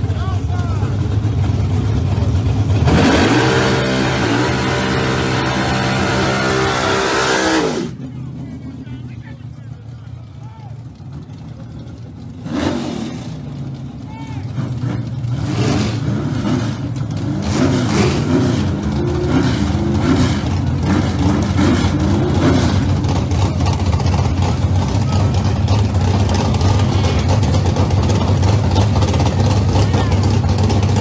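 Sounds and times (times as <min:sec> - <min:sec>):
vehicle engine idling: 0:00.0 - 0:06.7, 0:07.7 - 0:31.0
muffled voices: 0:07.9 - 0:10.9.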